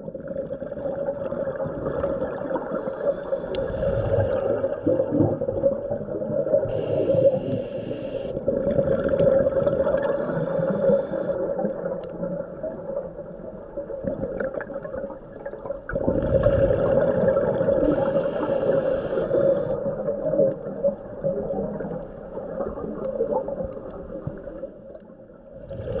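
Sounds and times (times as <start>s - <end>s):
exhaled bubbles surging: 0.1s - 12.5s, 14.0s - 20.4s
diver breathing through regulator: 2.6s - 4.4s, 6.7s - 8.4s, 9.9s - 11.4s, 17.8s - 19.8s
steady low hum: 6.7s - 8.4s, 10.0s - 11.4s.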